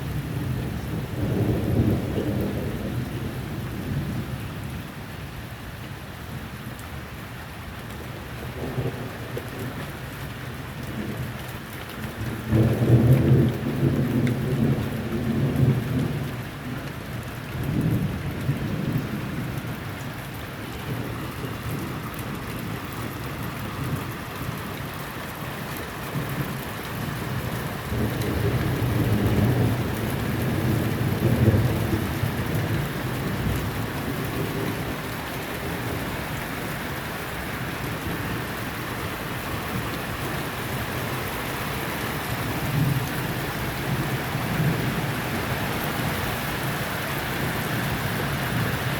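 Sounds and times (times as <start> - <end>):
steady rain falling: 0.0 - 48.9
thunder rumbling: 0.1 - 4.3, 17.5 - 48.9.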